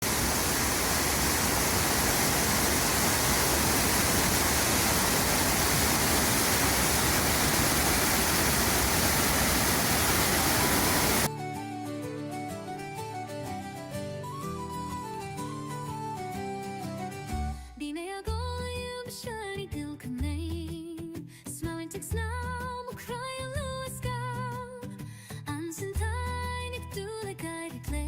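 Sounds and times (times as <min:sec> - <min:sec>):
waterfall rushing: 0:00.0 - 0:11.3.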